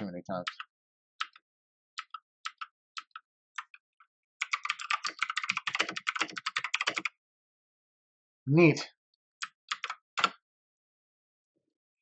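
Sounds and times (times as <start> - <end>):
mechanical keyboard typing: 2.0 - 3.7, 4.4 - 7.1, 9.4 - 10.4.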